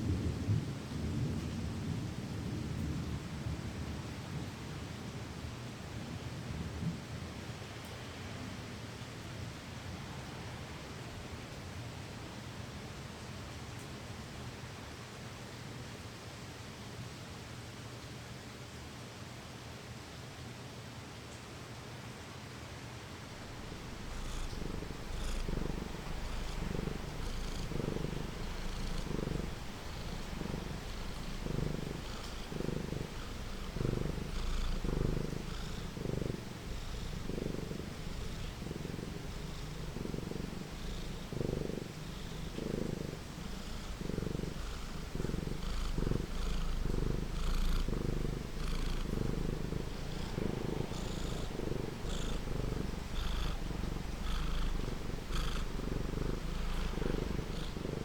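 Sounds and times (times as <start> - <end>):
cat purring: 23.2 - 58.0
rain hissing: 23.2 - 58.0.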